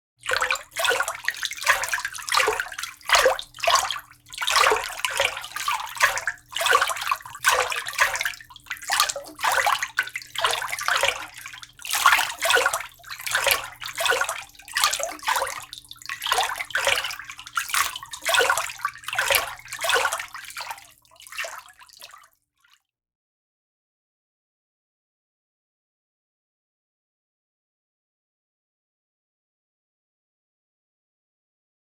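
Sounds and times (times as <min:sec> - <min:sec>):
water sloshing and splashing: 0:00.2 - 0:22.3.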